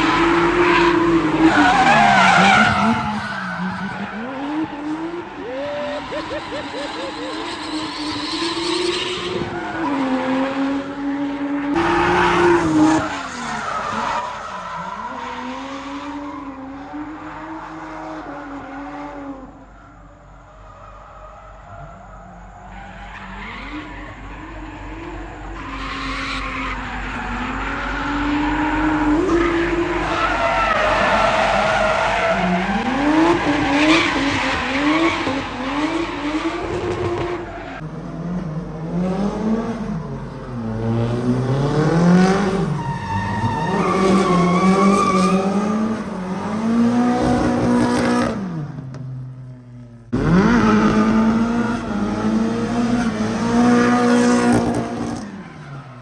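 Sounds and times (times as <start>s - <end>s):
car engine revving hard: 0.0s - 13.1s, 43.6s - 48.6s, 50.1s - 55.4s
tyres skidding and squealing: 0.0s - 56.0s.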